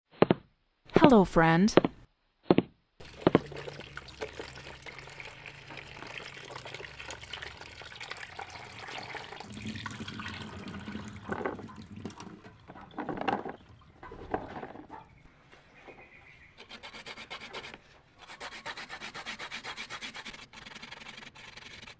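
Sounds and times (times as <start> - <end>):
water running from a tap: 3.0 - 13.9.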